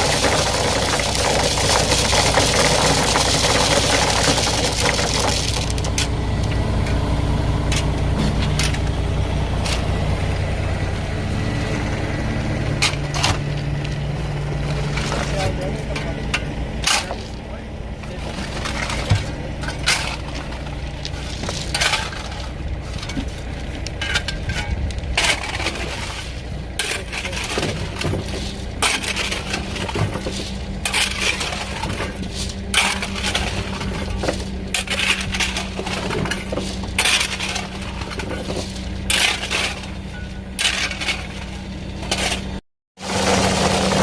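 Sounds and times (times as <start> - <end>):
gravel being shovelled: 0.0 - 6.2, 16.9 - 44.0
engine hum: 0.0 - 44.0.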